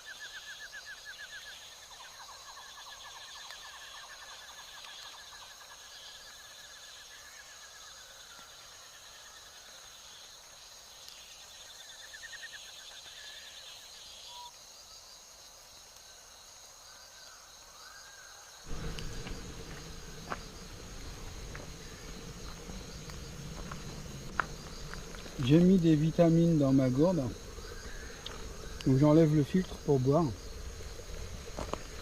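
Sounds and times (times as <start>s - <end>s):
insects droning and trilling: 0.0s - 32.0s
low rumble: 18.7s - 32.0s.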